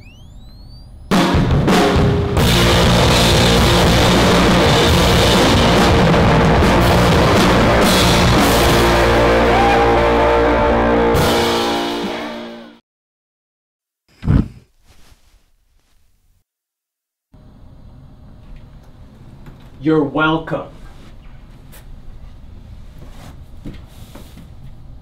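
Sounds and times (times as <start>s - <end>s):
faint rising whine: 0.0s - 1.4s
loud rock music with drums: 1.1s - 12.7s.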